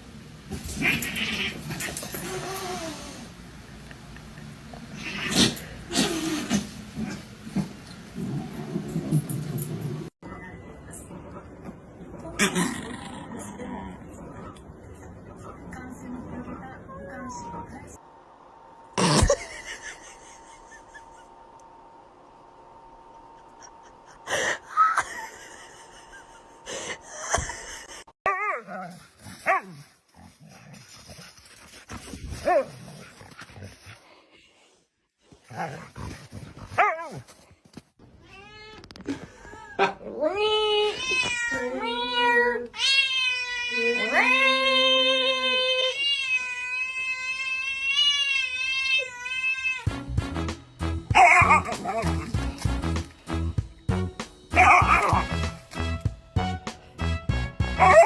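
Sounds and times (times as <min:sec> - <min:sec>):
dog barking and whining: 0:28.3 - 0:29.8, 0:32.3 - 0:33.1, 0:36.7 - 0:37.2, 0:51.1 - 0:52.2, 0:54.5 - 0:55.4, 0:57.8 - 0:58.0.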